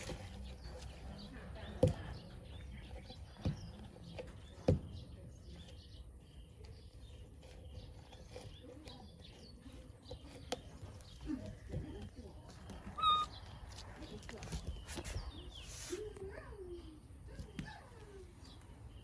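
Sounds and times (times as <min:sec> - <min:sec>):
faint bird chirps: 0:12.5 - 0:19.0.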